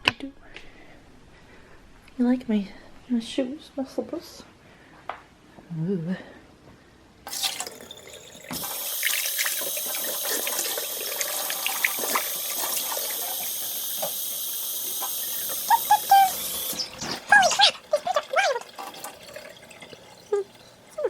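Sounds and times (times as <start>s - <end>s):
tap water running into sink: 7.3s - 21.0s.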